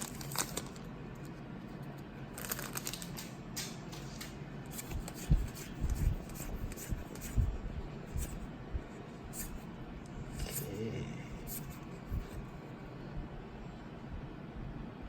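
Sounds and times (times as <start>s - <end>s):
cards and foil packs rustling: 0.0s - 1.4s, 2.3s - 4.3s.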